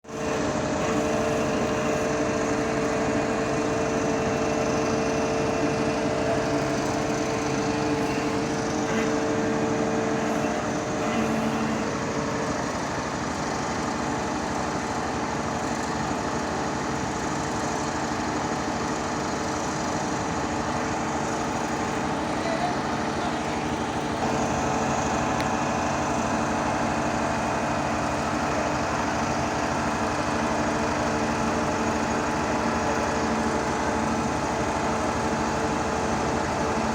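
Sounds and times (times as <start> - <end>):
pile driver engine humming: 0.0 - 17.0, 19.7 - 36.9
held whining tones: 0.1 - 13.0.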